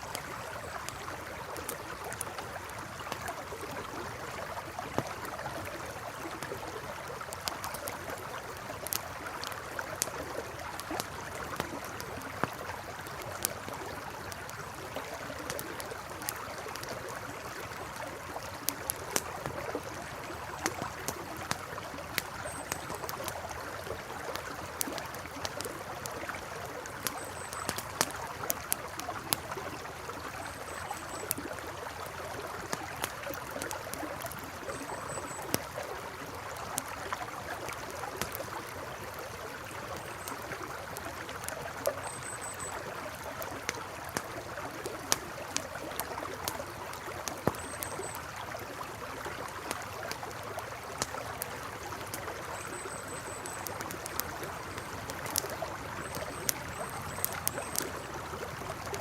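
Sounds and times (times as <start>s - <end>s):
campfire crackling and popping: 0.0s - 59.0s
flowing river: 0.0s - 59.0s.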